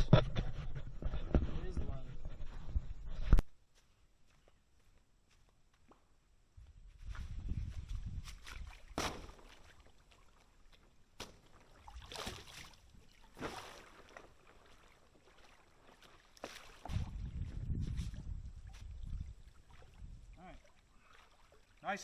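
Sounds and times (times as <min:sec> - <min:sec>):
creek water splashing: 0:08.2 - 0:22.0.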